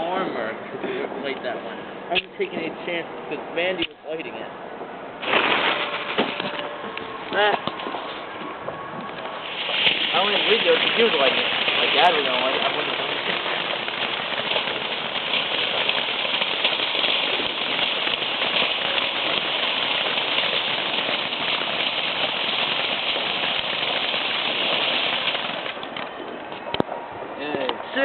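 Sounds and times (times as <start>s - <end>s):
firework crackling hiss: 5.2s - 6.7s, 9.1s - 26.5s.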